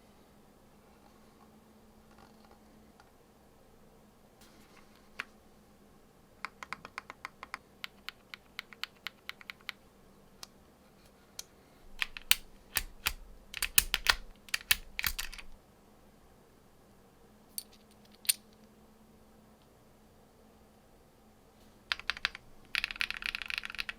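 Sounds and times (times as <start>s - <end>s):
mechanical keyboard typing: 6.5s - 9.8s, 12.0s - 15.5s, 21.9s - 23.9s.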